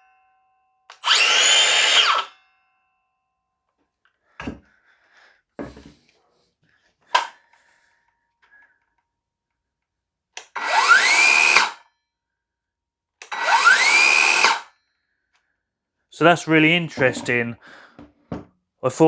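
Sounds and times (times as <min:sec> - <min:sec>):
circular saw motor whine: 0:01.0 - 0:02.3, 0:10.6 - 0:11.8, 0:13.4 - 0:14.6.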